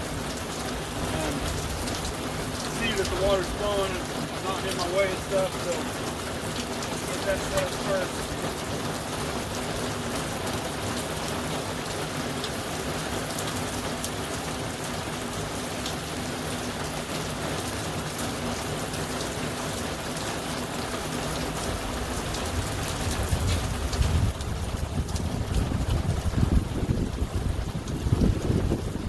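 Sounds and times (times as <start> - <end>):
heavy rain pouring: 0.0 - 29.0.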